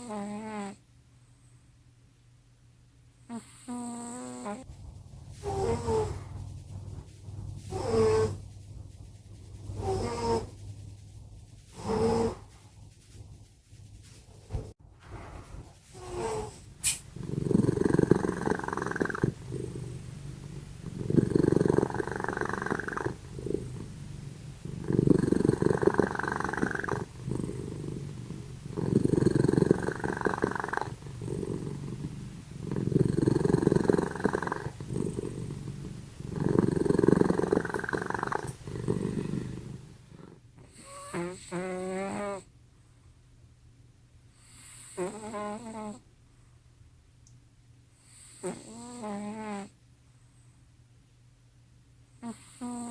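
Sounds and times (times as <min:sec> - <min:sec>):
cat snoring: 0:00.0 - 0:00.8, 0:03.3 - 0:04.7, 0:05.3 - 0:08.4, 0:09.7 - 0:10.6, 0:11.7 - 0:12.5, 0:15.9 - 0:42.5, 0:44.4 - 0:46.1, 0:48.0 - 0:49.8, 0:52.2 - 0:52.9.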